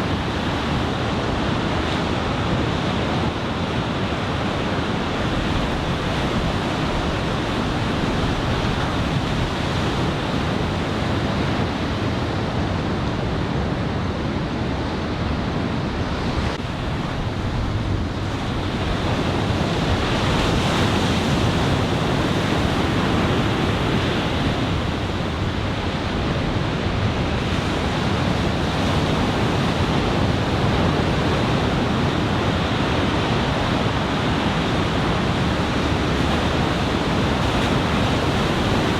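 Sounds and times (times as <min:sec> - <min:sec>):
ocean surf breaking: 0:00.0 - 0:14.1, 0:14.7 - 0:38.9
wind buffeting microphone: 0:00.0 - 0:38.9.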